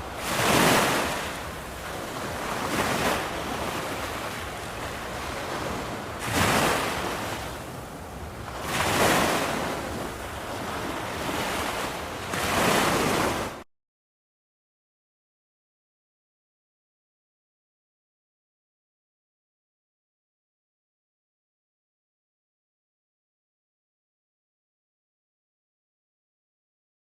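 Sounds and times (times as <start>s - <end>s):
waves breaking on a beach: 0.0s - 13.6s.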